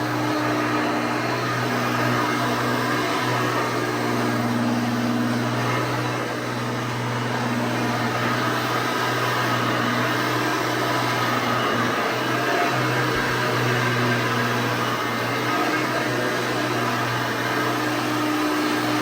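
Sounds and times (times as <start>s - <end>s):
upright vacuum cleaner running: 0.0s - 19.0s.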